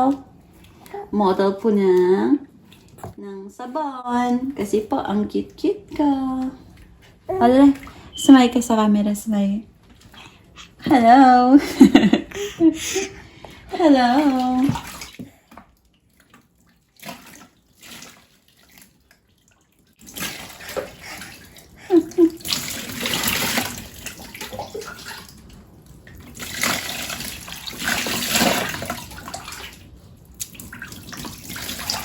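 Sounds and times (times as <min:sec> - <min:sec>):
water pouring and splashing: 0:14.1 - 0:32.0.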